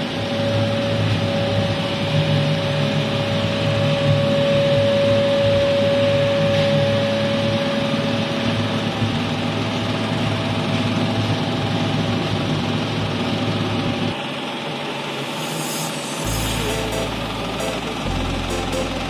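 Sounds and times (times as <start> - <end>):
car engine idling: 16.2 - 19.0.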